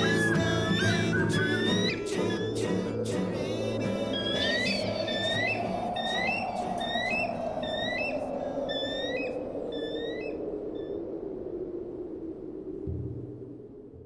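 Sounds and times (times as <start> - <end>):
bird-like chirping whistles: 0.0 - 11.0.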